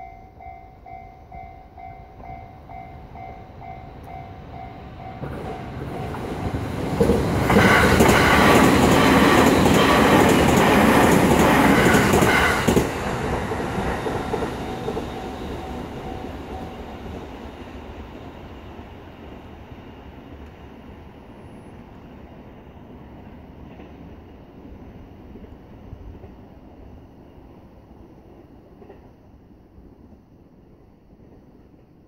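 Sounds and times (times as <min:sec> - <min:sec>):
crossing warning bell ringing: 0:00.0 - 0:06.2
train passing: 0:00.0 - 0:32.0.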